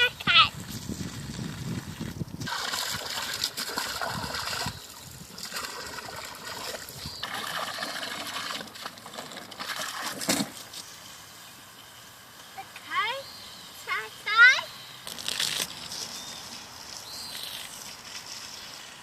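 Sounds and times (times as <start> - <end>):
water splashing and trickling: 0.8 - 11.0.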